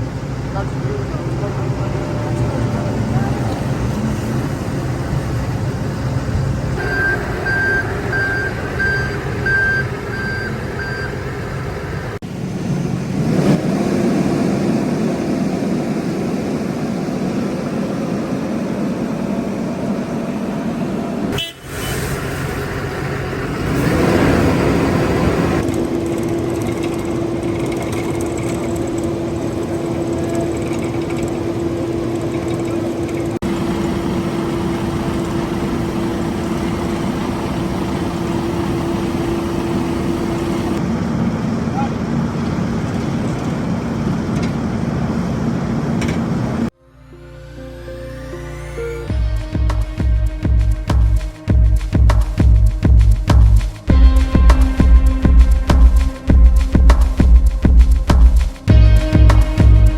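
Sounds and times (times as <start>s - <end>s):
engine revving: 0.0s - 46.7s
diesel engines droning: 0.0s - 59.9s
reversing alarm beeping: 6.8s - 11.6s.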